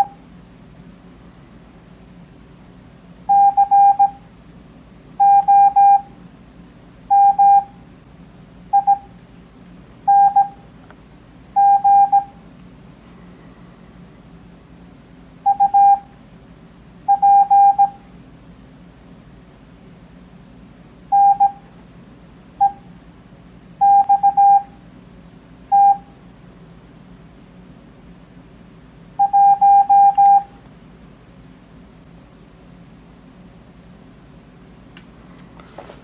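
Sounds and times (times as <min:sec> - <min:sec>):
morse code beeps: 0:03.3 - 0:04.2, 0:05.2 - 0:06.1, 0:07.1 - 0:07.8, 0:08.7 - 0:09.1, 0:10.1 - 0:10.6, 0:11.6 - 0:12.4, 0:15.4 - 0:16.1, 0:17.1 - 0:18.0, 0:21.1 - 0:21.6, 0:22.6 - 0:22.8, 0:23.8 - 0:24.7, 0:25.7 - 0:26.1, 0:29.2 - 0:30.6.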